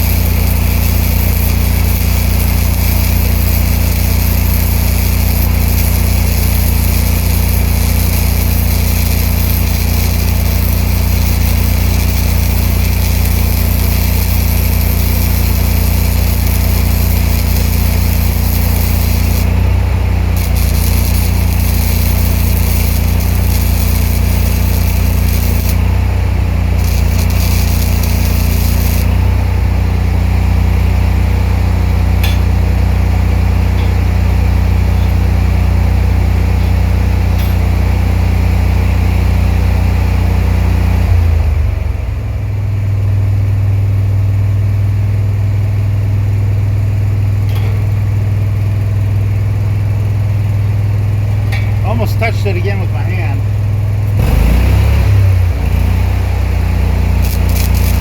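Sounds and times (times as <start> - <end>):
crackling hiss of welding arc: 0.0 - 29.6, 51.4 - 58.0
welder generator engine running: 0.0 - 58.0.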